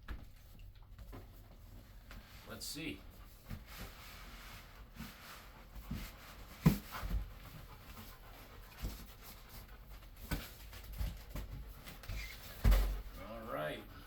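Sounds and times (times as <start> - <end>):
knocks and thumps of packaging: 12.5 - 13.0.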